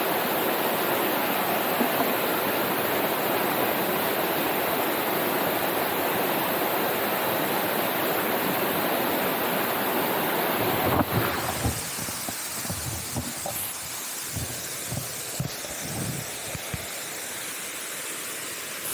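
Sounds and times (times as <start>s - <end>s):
loud rushing noise: 10.5s - 12.2s.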